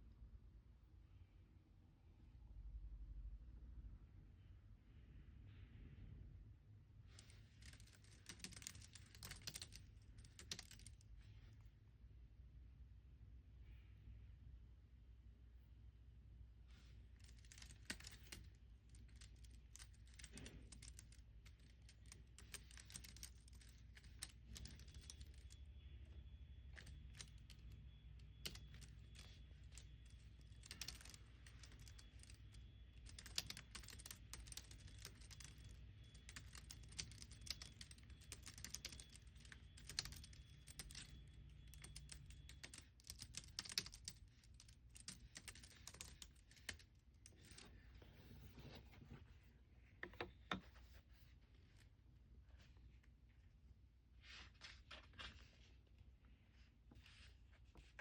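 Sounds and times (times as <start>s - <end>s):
typing on keyboard: 7.2s - 11.0s, 17.2s - 47.7s.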